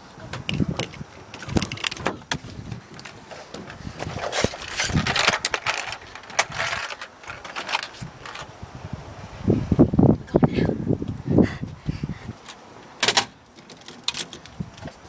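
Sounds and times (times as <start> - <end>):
rustling: 1.3 - 8.5.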